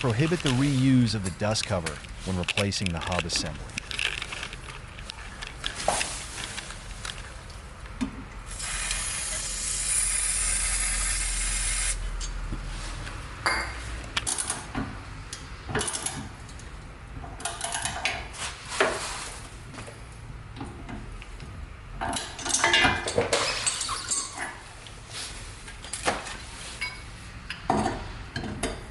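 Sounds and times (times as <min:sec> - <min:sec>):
spray hiss: 0:08.5 - 0:12.0.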